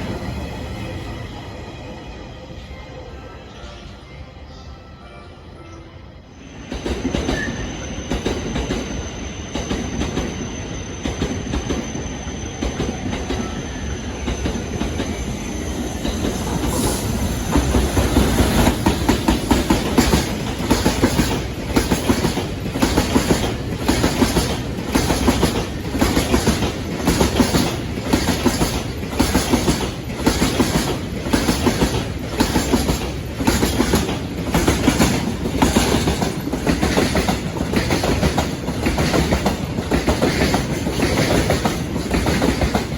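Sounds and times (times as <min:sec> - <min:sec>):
train wheels clacking over rail joints: 0:17.5 - 0:42.9.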